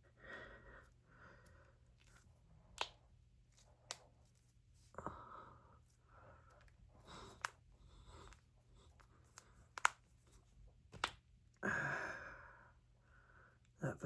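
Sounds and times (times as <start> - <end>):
knuckles cracking: 2.0 - 4.2, 6.5 - 11.2.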